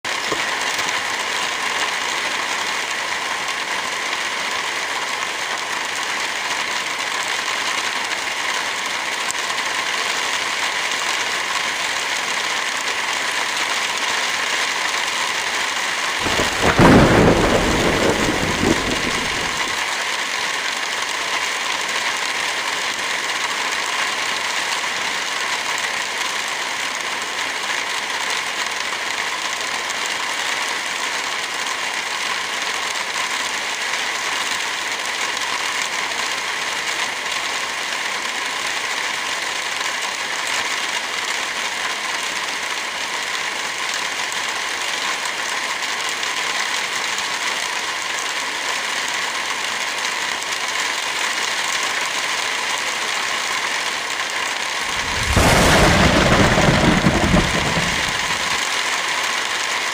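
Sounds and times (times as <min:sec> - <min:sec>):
heavy rain: 0:00.1 - 0:59.9
low rumble: 0:54.9 - 0:58.6.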